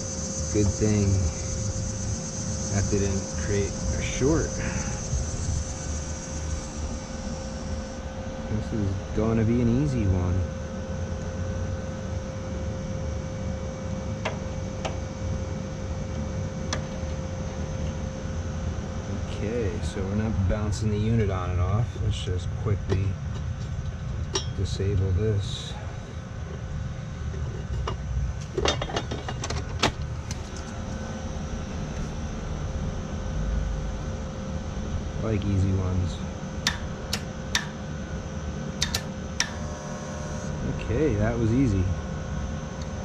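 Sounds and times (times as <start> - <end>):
air conditioner units humming: 0.0 - 43.0
sharp clicks: 36.7 - 37.8, 38.8 - 39.6.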